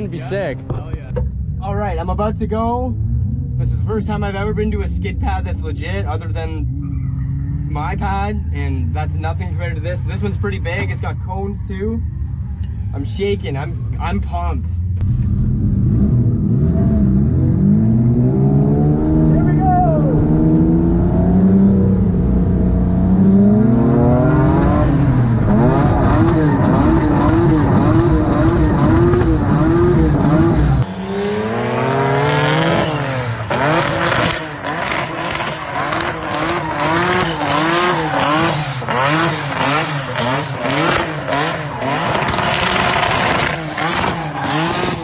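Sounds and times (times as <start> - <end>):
car engine revving: 0.0 - 45.0
engine crackling: 14.7 - 45.0.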